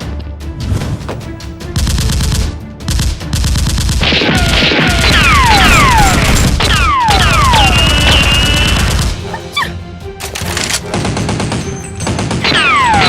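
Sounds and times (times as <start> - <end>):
rapid machine-gun fire: 1.7 - 9.3, 10.8 - 13.0.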